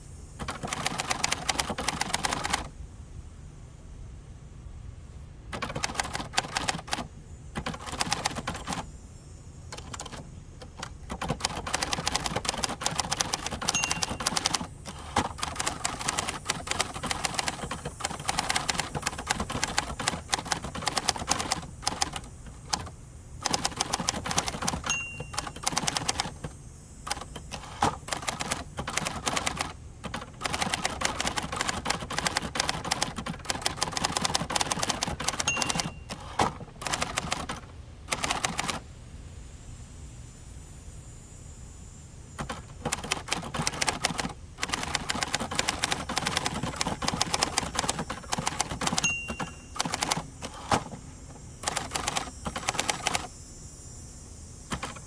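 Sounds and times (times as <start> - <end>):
manual typewriter keystrikes: 0.4 - 2.7, 5.5 - 8.9, 9.7 - 38.8, 42.4 - 53.3, 54.7 - 55.0.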